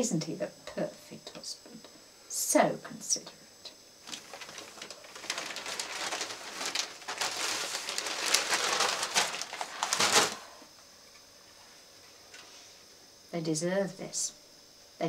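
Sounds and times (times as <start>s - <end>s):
rustling and crinkling: 4.0s - 10.7s.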